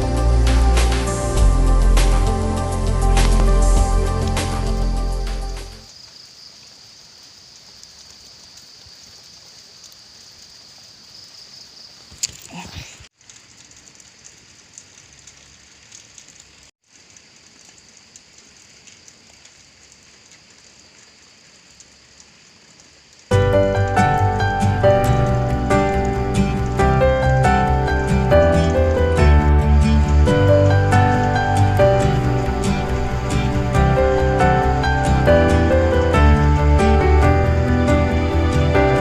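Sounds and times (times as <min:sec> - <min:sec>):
storm rain falling: 0:00.0 - 0:12.3, 0:13.1 - 0:39.0.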